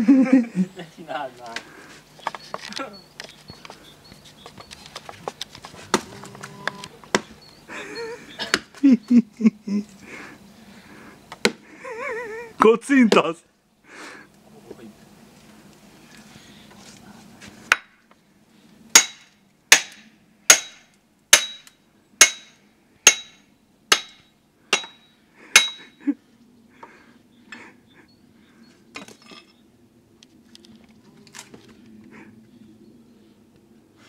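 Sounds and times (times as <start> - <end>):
sharp metallic knocks: 18.9 - 25.9.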